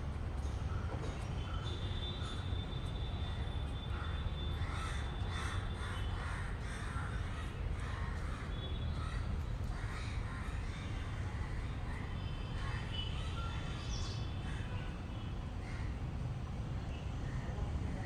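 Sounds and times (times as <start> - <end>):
crows cawing: 3.3 - 11.7.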